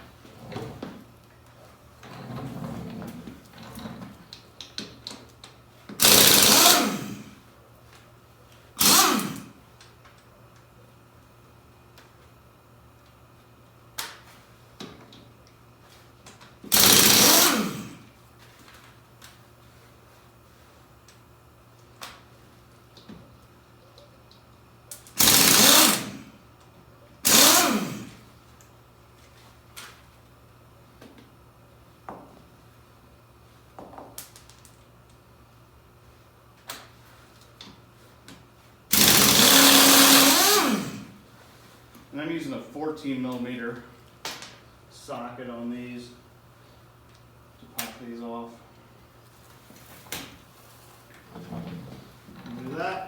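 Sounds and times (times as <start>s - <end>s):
power tool spinning socket: 6.0s - 7.3s, 8.8s - 9.5s, 16.7s - 18.0s, 25.2s - 26.3s, 27.2s - 28.2s, 38.9s - 41.1s
impact wrench bursts: 6.0s - 7.4s, 8.8s - 9.6s, 16.7s - 18.1s, 25.1s - 26.4s, 27.2s - 28.2s, 38.9s - 41.2s
knocks and clatter of parts: 51.2s - 52.8s.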